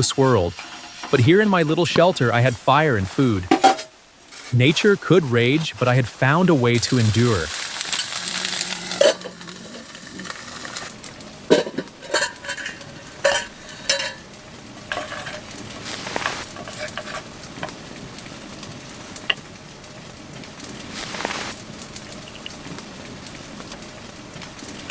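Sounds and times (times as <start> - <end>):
food sizzling: 0.0 - 1.9, 2.7 - 24.9
utensils clinking on metal cookware: 11.5 - 14.2, 14.9 - 15.5, 16.5 - 17.3.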